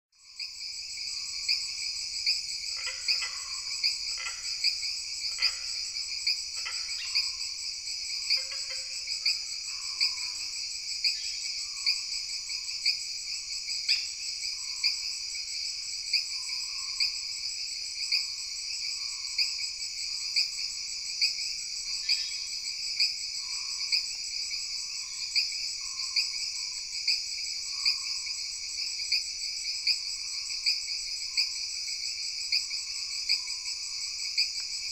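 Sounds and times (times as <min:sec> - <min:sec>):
trilling insects chorus: 0:00.2 - 0:34.9
frogs calling: 0:01.2 - 0:12.7.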